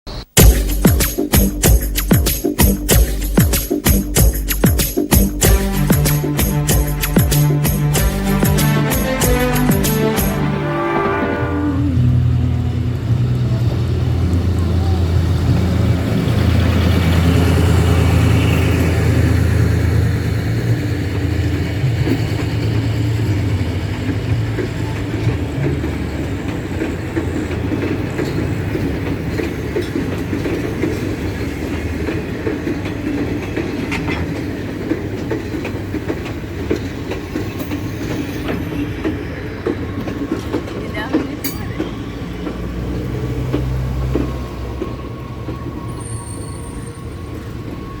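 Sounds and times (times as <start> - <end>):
diesel locomotive engine hum: 5.4 - 48.0
wheels clicking over rail joints: 18.8 - 46.2.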